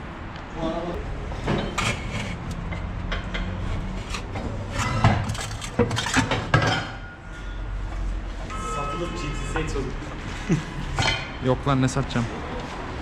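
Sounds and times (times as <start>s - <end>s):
metal knocks and clanks: 1.3s - 7.6s.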